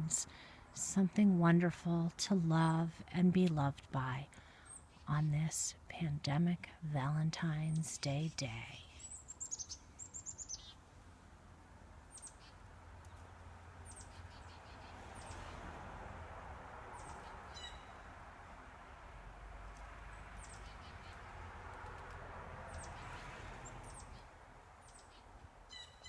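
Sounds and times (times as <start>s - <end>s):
faint background hiss: 0.0s - 14.3s
small birds chirping: 7.4s - 10.9s, 12.1s - 15.6s, 17.0s - 18.0s, 20.1s - 22.1s, 22.7s - 26.0s.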